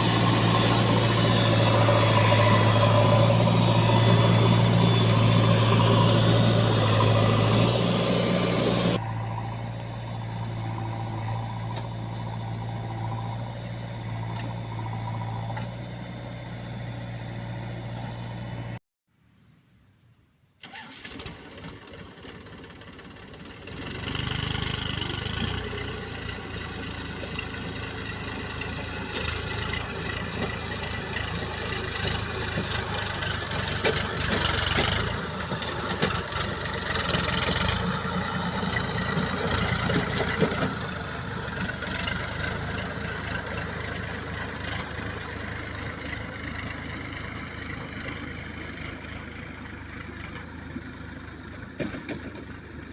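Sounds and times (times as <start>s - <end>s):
diesel engines running: 0.0s - 18.8s, 20.6s - 52.9s.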